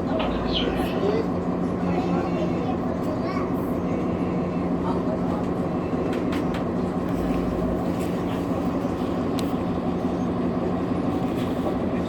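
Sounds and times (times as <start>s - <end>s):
bus engine and road noise: 0.0s - 12.0s.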